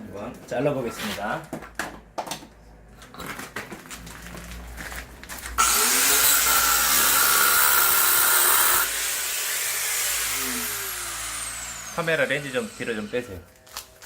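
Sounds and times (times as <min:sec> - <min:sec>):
power tool cutting pipe: 0:05.6 - 0:13.4.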